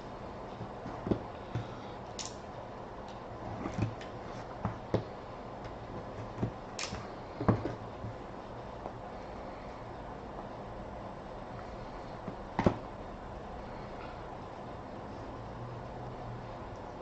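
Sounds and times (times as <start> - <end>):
cardboard knocks and taps: 7.4 - 8.2.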